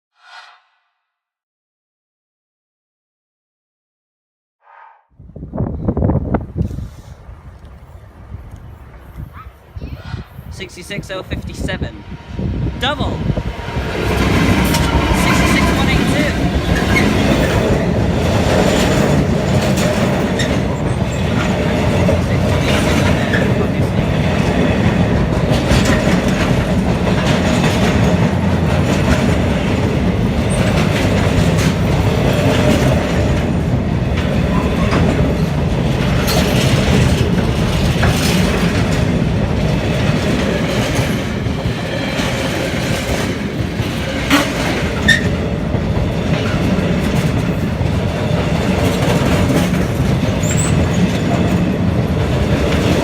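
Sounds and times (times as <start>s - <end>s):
freight train rumbling past: 5.2s - 53.0s
wheels clicking over rail joints: 14.2s - 53.0s
high-pitched wheel squeals: 45.0s - 45.4s.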